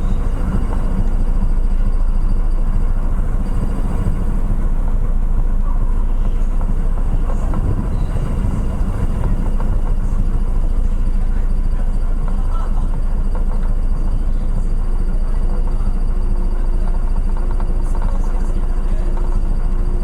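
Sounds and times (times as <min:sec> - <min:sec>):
ship engine drone: 0:00.0 - 0:20.0.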